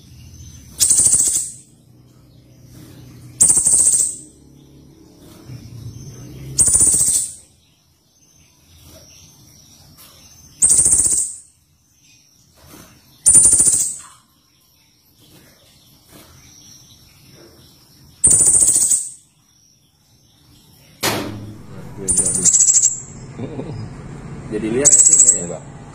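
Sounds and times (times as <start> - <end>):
songbird harsh rapid trills: 0.7 - 1.7, 3.4 - 4.4, 6.5 - 7.4, 10.6 - 11.4, 13.2 - 14.0, 18.2 - 19.1, 21.6 - 23.3, 24.8 - 25.6.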